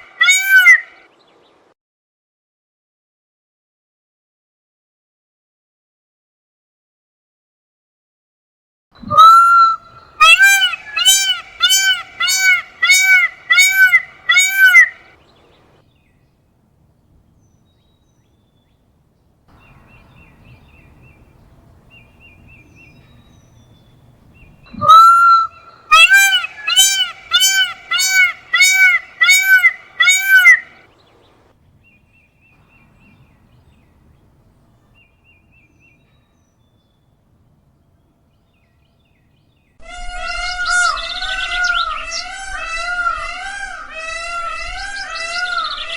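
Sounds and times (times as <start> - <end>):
peacock calling: 0.0 - 1.2, 9.0 - 16.2, 19.5 - 31.5, 39.8 - 45.9
small birds chirping: 9.0 - 37.2.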